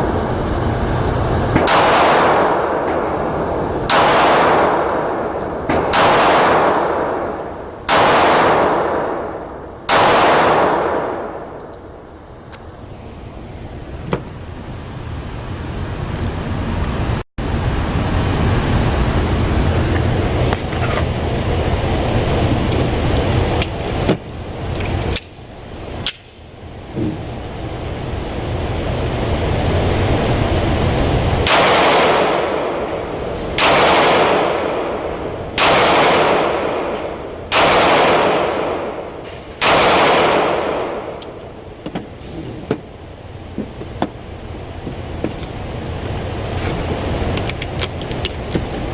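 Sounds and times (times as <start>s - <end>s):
steady rushing noise: 0.0s - 48.9s
pistol shots with echo: 1.6s - 11.6s, 31.4s - 33.0s, 33.6s - 41.4s.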